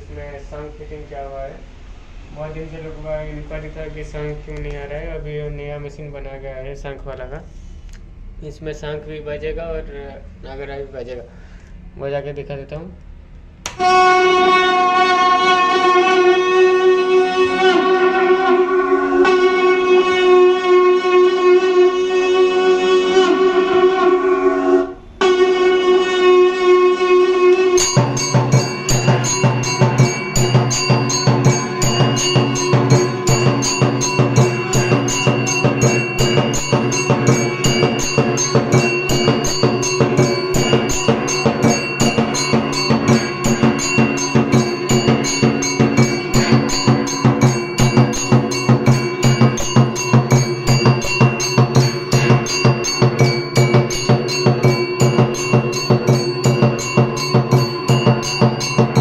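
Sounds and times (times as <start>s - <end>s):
conch long steady note: 13.7s - 59.0s
cymbals: 13.7s - 59.0s
bells ringing: 27.6s - 59.0s
mechanical drum beat: 27.8s - 59.0s.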